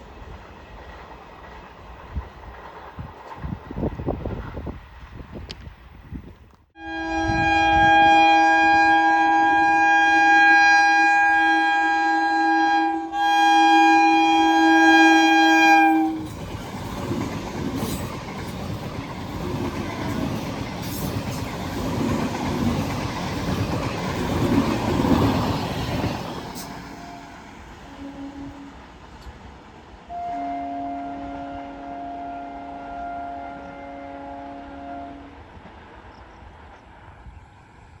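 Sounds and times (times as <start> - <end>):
train wheels rumbling and clattering: 0.0 - 5.8, 16.0 - 27.9
train horn blast: 6.8 - 16.4, 26.6 - 28.9, 30.1 - 35.5.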